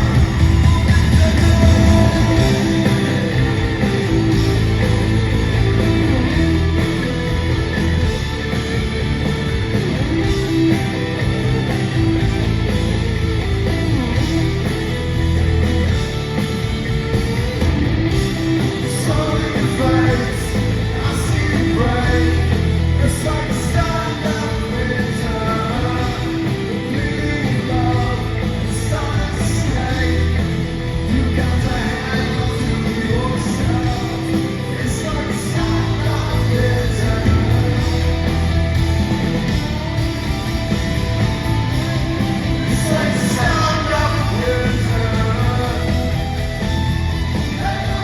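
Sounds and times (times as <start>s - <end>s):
person singing: 0.0s - 4.0s
bass guitar: 0.0s - 48.0s
distorted electric guitars: 0.0s - 48.0s
drums: 0.0s - 48.0s.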